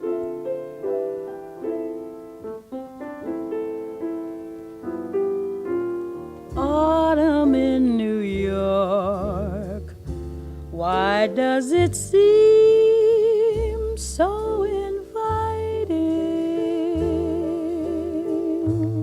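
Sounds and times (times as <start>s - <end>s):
slow piano music: 0.0s - 19.0s
person singing with vibrato: 10.7s - 19.0s.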